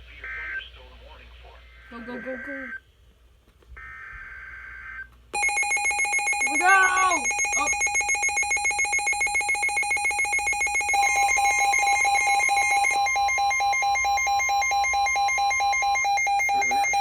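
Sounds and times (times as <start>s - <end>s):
rapidly pulsing alarm tone: 1.8s - 2.8s, 3.8s - 17.0s
steady higher alarm tone: 5.4s - 17.0s.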